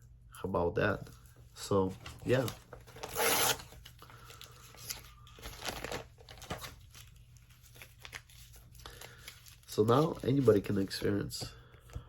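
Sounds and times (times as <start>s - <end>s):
crinkling and rustling: 1.8s - 11.4s.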